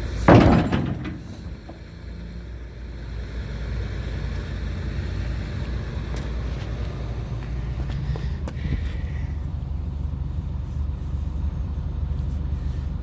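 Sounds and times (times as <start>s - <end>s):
diesel engine running: 0.0s - 13.0s
loud bang on steel: 0.3s - 1.4s.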